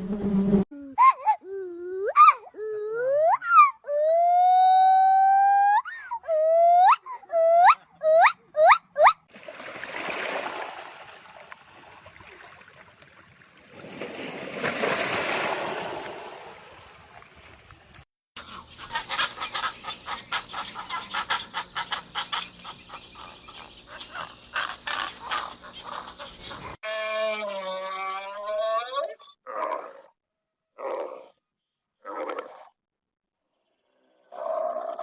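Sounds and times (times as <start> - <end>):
waterfowl quacking and honking: 18.4 - 26.8.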